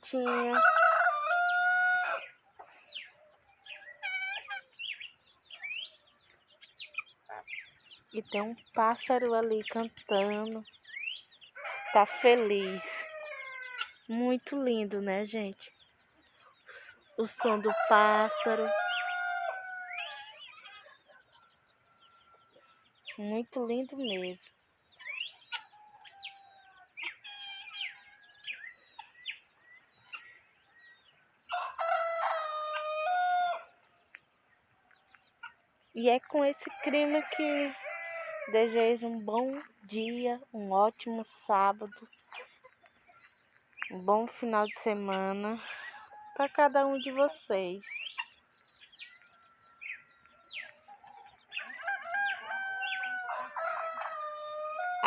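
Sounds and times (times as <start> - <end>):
birds chirping: 0.0 - 55.0
rooster crowing: 0.2 - 2.4, 11.6 - 14.0, 17.4 - 22.8, 31.5 - 33.8, 36.6 - 38.6, 49.1 - 55.0.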